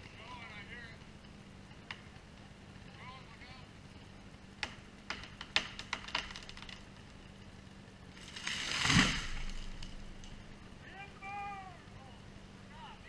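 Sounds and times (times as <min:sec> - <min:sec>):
wood cracking: 0:04.6 - 0:07.2, 0:08.1 - 0:10.6
crash of branches: 0:04.7 - 0:07.2, 0:08.1 - 0:10.6.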